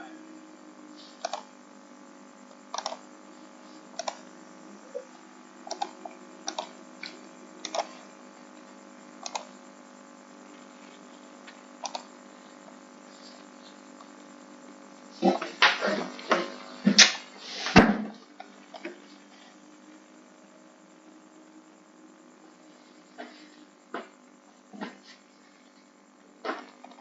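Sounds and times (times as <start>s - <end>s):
steady low hum: 0.0s - 27.0s
computer mouse clicking: 1.2s - 1.5s, 2.7s - 3.0s, 3.9s - 4.2s, 5.6s - 7.9s, 9.2s - 9.5s, 11.8s - 12.1s.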